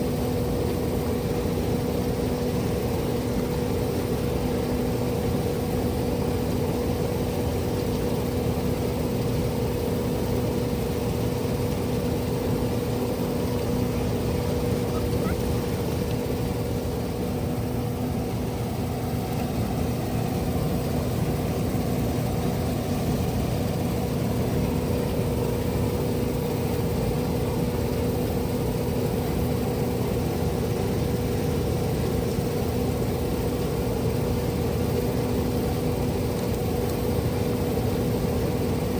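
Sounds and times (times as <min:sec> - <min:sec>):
combine harvester droning: 0:08.2 - 0:27.6.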